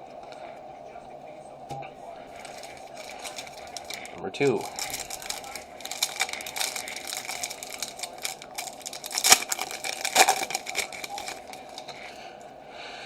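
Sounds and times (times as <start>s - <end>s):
foil pack tearing: 2.3s - 12.2s
foil pack crinkling: 2.3s - 12.3s.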